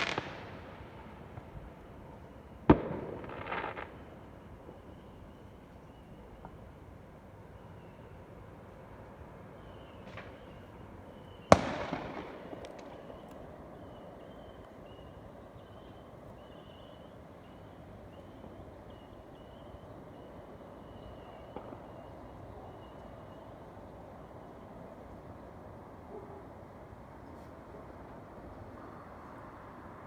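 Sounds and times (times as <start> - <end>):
distant pop: 0.0 - 1.5, 2.7 - 4.0, 11.5 - 13.5
loud firework bang: 11.5 - 13.2.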